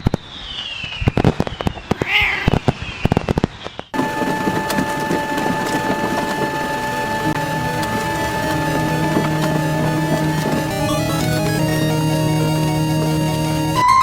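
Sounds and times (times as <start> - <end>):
firework whistles: 0.0 - 2.0
fireworks popping and crackling: 0.0 - 13.8
background music with held tones: 4.0 - 14.0.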